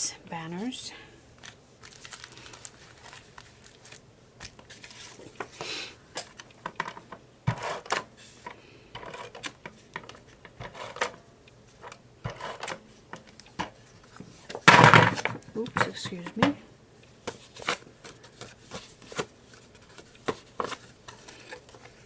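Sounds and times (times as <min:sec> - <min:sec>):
paper rustling and sliding: 0:01.4 - 0:05.7, 0:17.3 - 0:22.0.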